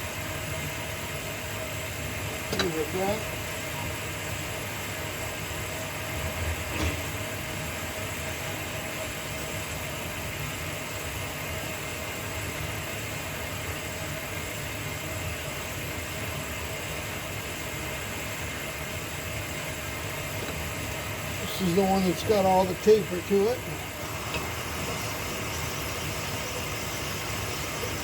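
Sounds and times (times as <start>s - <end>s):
honing machine rumbling: 18.4s - 28.0s.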